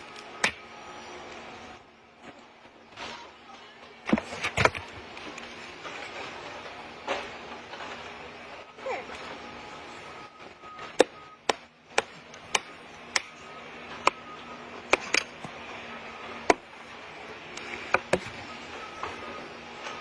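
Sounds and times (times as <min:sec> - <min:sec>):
axe chopping wood: 0:11.0 - 0:13.4, 0:14.9 - 0:15.5.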